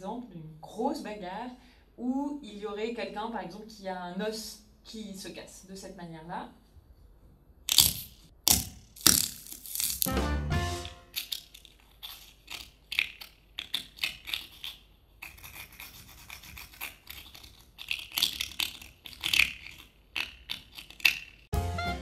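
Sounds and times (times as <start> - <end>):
celery stalks snapping: 7.7 - 10.1.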